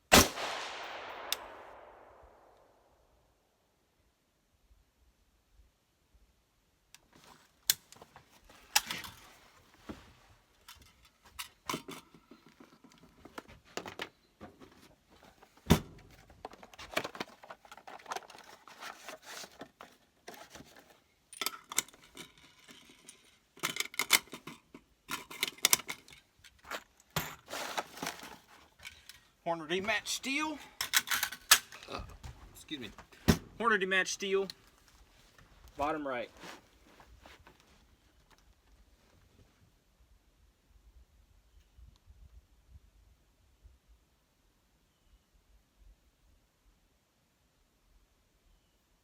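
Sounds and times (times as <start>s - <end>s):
clicks and clinks of gear handling: 7.0s - 29.4s, 30.6s - 31.9s.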